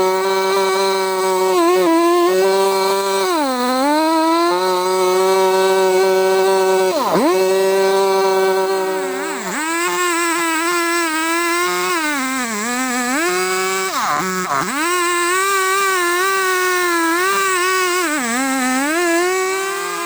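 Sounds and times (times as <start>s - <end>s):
chainsaw running at high revs: 0.0s - 20.0s.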